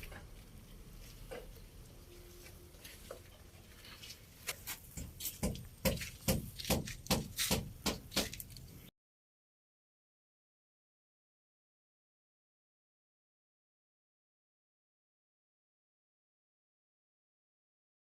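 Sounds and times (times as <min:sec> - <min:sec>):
sharp knocks: 0:05.0 - 0:08.4.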